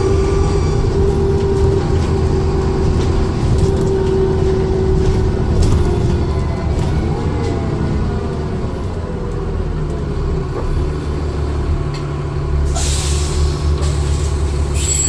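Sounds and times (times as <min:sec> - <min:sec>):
bus engine drone: 0:00.0 - 0:15.0
compressed air hiss: 0:12.7 - 0:15.0.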